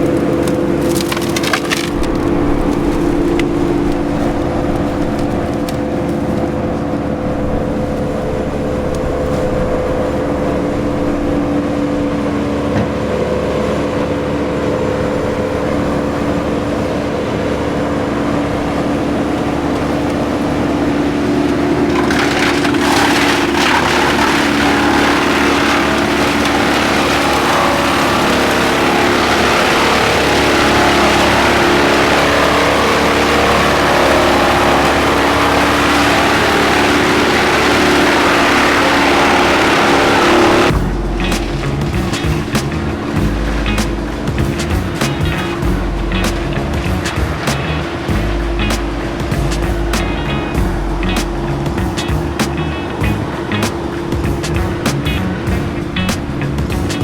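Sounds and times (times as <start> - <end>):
wood grinding and splintering: 0.0 - 11.3, 18.0 - 57.0
wood chipper engine running: 0.0 - 57.0.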